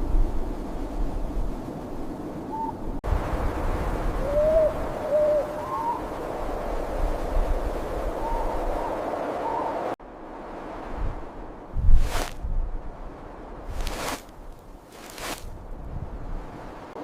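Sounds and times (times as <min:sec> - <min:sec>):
wind rumble: 0:00.0 - 0:17.0
owl hooting: 0:02.5 - 0:02.8, 0:04.2 - 0:06.1.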